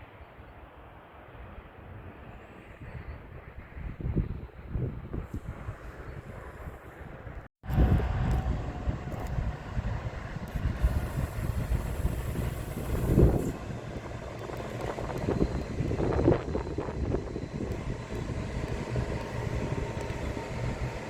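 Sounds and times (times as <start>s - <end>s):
train wheels rumbling on rails: 7.6s - 21.0s.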